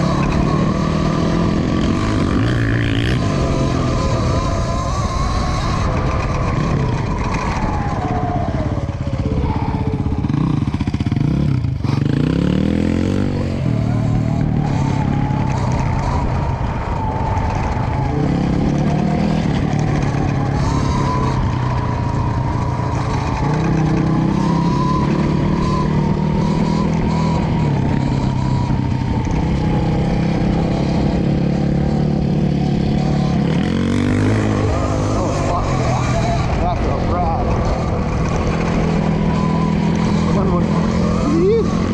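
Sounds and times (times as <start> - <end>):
electric motorbike motor whining: 0.0 - 41.9
wind and tyre noise: 0.0 - 41.9.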